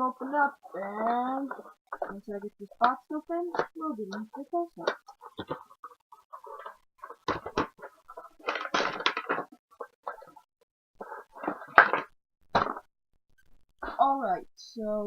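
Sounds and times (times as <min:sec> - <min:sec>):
packaging rustling and scraping: 0:05.1 - 0:10.4, 0:11.0 - 0:12.8.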